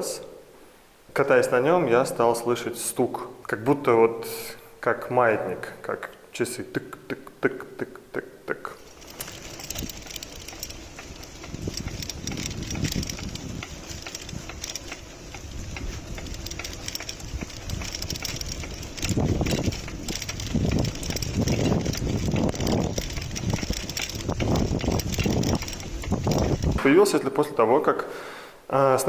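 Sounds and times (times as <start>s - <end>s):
bicycle freewheel ticking: 8.8s - 26.9s
low riding rumble: 8.8s - 27.1s.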